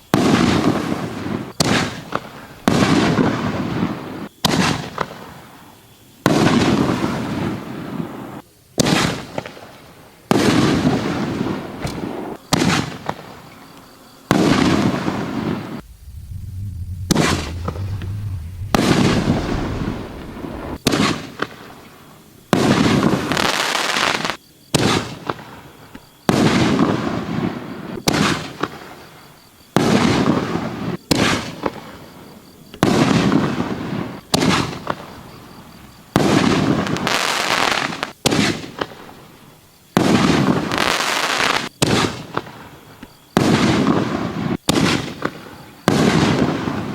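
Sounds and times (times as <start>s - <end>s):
firework crackle and hiss: 0.0s - 13.4s, 14.3s - 29.1s, 29.7s - 46.9s
firework bangs: 10.3s - 13.4s, 14.3s - 21.7s, 32.8s - 39.0s, 43.4s - 46.9s.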